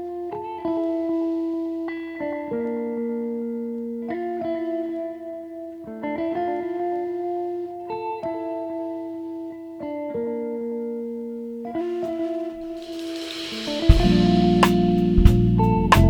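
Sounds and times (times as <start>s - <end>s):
light instrumental music: 11.6s - 16.0s.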